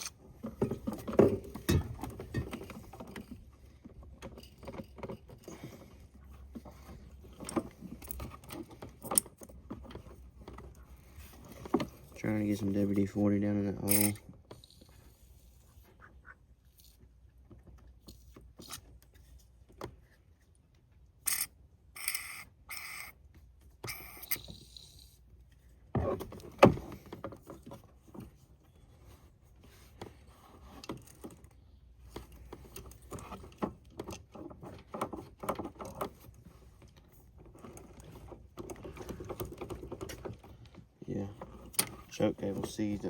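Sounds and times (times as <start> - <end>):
metal clicks and scrapes: 13.8 - 17.1.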